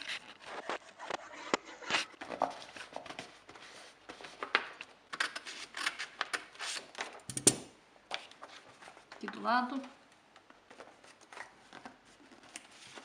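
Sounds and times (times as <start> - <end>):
paper rustling and crinkling: 1.9 - 7.2, 8.1 - 9.2, 10.4 - 13.0.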